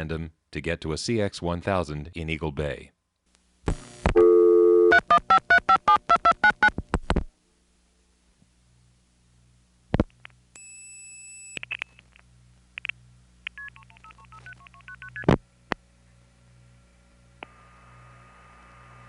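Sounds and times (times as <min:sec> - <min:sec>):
carrier noise hiss: 0:03.2 - 0:16.2, 0:17.3 - 0:19.0.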